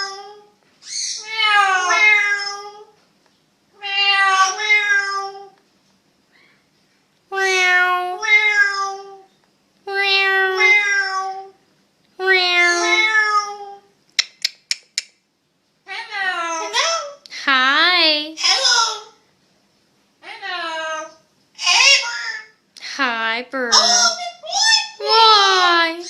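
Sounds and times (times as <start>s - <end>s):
parrot meow-like call: 0.0s - 2.8s
sharp clicks: 14.2s - 15.2s.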